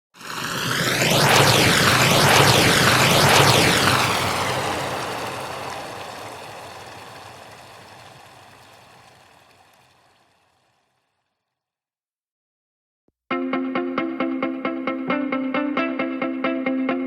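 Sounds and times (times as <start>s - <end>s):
rushing whoosh with phasing swirl: 0.2s - 9.4s.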